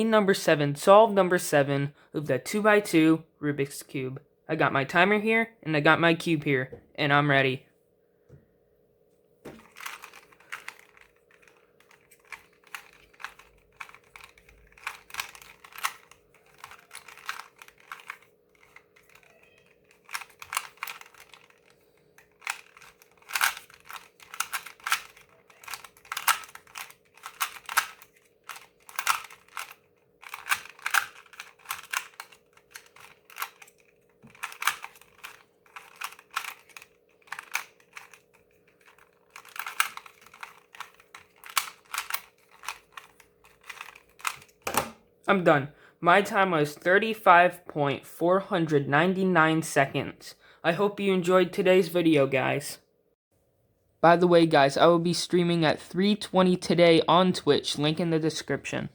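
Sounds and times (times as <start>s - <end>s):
faint steady hum: 0.0s - 58.9s
plastic puzzle cube clicking: 9.6s - 44.9s.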